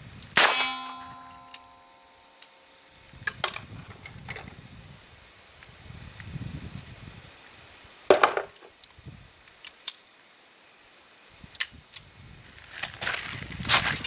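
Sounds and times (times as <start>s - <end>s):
metallic ringing: 0.4s - 2.9s.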